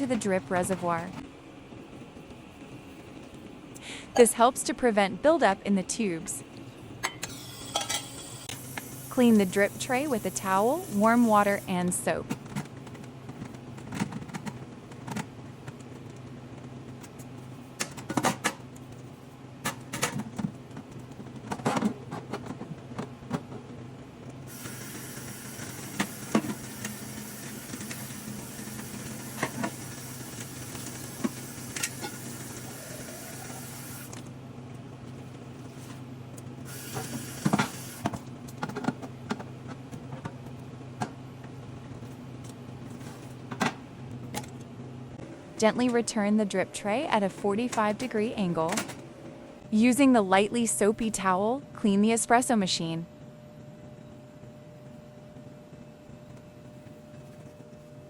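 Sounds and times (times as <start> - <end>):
steady low hum: 0.0 - 58.0
water running from tap: 8.5 - 11.7, 24.5 - 34.1.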